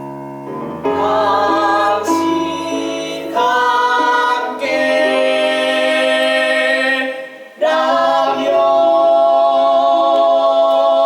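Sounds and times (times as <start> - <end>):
voices singing held notes: 0.9 - 11.0.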